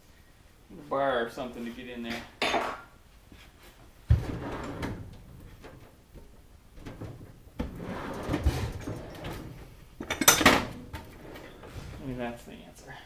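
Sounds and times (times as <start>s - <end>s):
metal tools scraping and clanking: 7.9s - 12.0s.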